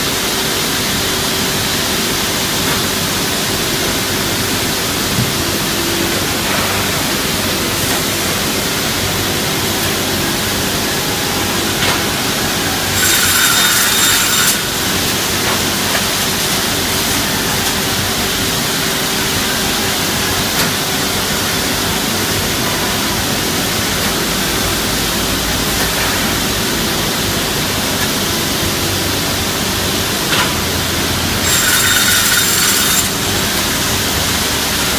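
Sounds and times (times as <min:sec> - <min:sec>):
saw motor humming: 0:10.4 - 0:15.0, 0:31.1 - 0:34.9
high-pitched saw cutting: 0:11.0 - 0:15.0, 0:31.3 - 0:33.5.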